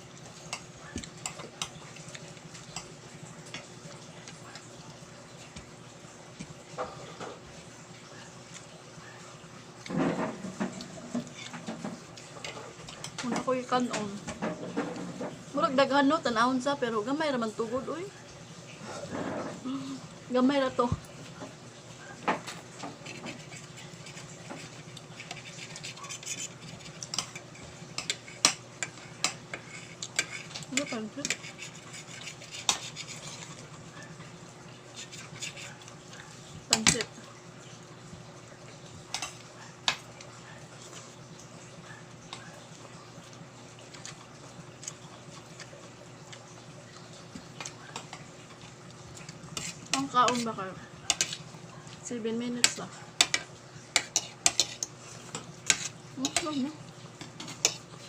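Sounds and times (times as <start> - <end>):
cutlery scraping and clinking on plate: 22.4 - 33.6, 52.7 - 56.6, 57.2 - 57.9.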